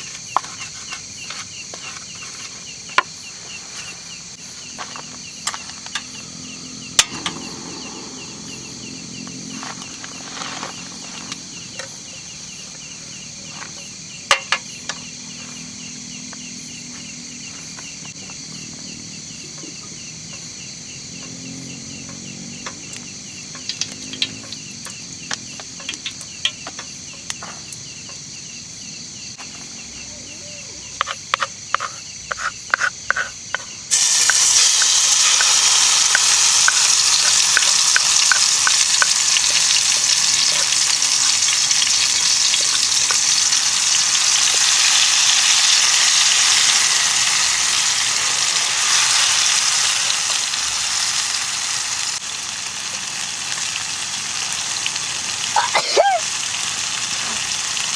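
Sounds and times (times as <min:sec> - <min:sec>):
food sizzling in hot oil: 0:22.9 - 0:26.4, 0:33.9 - 0:57.9.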